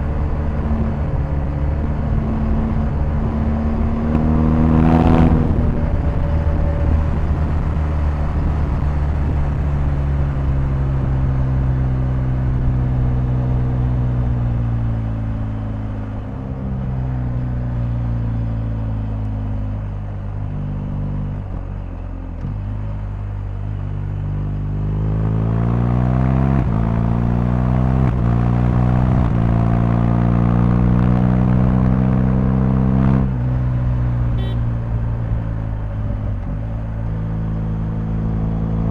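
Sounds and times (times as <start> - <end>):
motorcycle engine shifting gears: 26.0 - 38.9.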